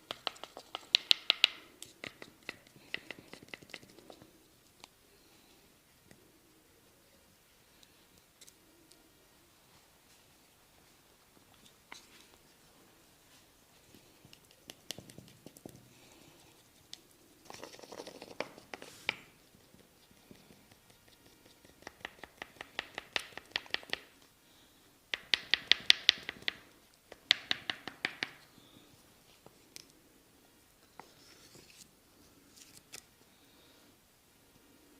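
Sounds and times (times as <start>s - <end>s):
percussive massage taps: 0.0s - 3.8s, 20.5s - 24.1s, 25.1s - 28.4s
hands rubbing skin: 0.1s - 4.3s.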